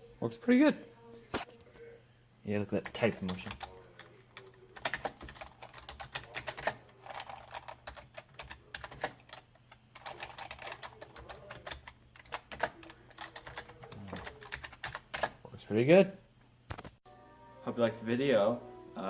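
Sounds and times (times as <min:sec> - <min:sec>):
computer keyboard keys clicking: 0:02.8 - 0:15.4.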